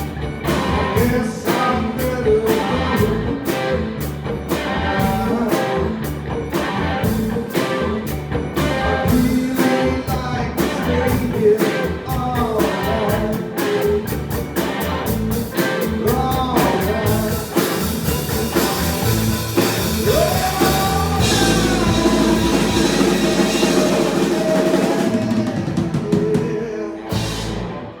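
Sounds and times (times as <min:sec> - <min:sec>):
rock music: 0:00.0 - 0:28.0
person singing: 0:00.5 - 0:27.6
drum beat: 0:15.2 - 0:26.4.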